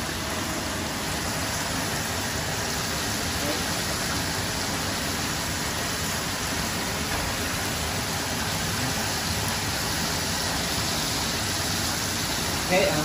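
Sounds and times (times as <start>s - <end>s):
fish frying in hot oil: 0.0s - 13.0s.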